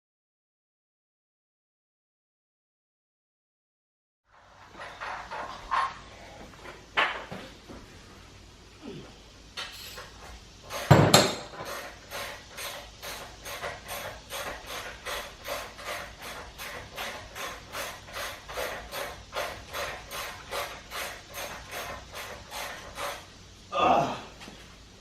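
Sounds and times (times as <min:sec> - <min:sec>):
loud metallic knock: 0:10.7 - 0:11.8
ratchet wrench clicking: 0:10.7 - 0:23.3.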